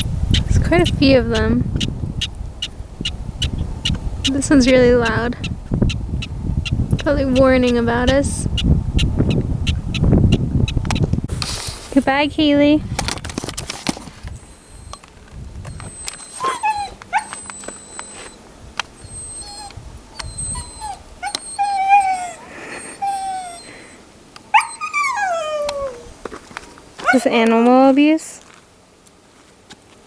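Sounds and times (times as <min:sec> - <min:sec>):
dog whining: 0:14.4 - 0:15.1, 0:15.7 - 0:26.1, 0:27.0 - 0:27.3.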